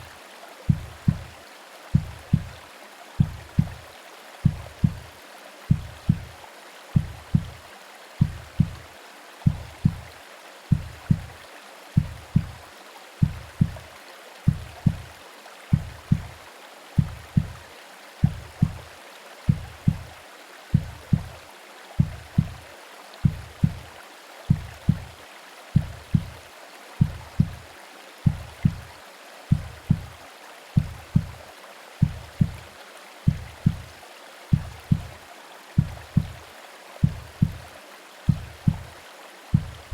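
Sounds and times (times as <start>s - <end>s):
rain: 0.0s - 39.9s
white noise hiss: 0.0s - 39.9s
heartbeat thumps: 0.7s - 2.6s, 3.2s - 3.8s, 4.4s - 5.1s, 5.7s - 6.4s, 7.0s - 7.6s, 8.2s - 8.8s, 9.4s - 11.4s, 12.0s - 12.6s, 13.2s - 13.9s, 14.5s - 15.1s, 15.7s - 16.4s, 17.0s - 17.6s, 18.2s - 18.9s, 19.5s - 21.4s, 22.0s - 22.6s, 23.2s - 23.9s, 24.5s - 25.2s, 25.8s - 26.4s, 27.0s - 27.6s, 28.2s - 28.9s, 29.5s - 30.2s, 30.8s - 31.4s, 32.0s - 32.7s, 33.3s - 35.2s, 35.8s - 36.4s, 37.0s - 37.7s, 38.3s - 39.9s.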